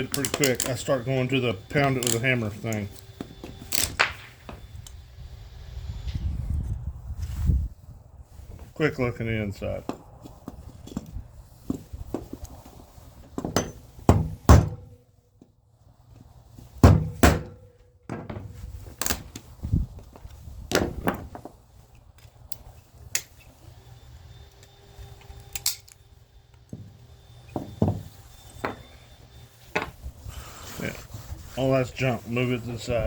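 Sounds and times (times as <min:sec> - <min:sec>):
hand tools thunking and knocking: 0:13.2 - 0:14.9, 0:16.8 - 0:18.6, 0:26.7 - 0:28.8.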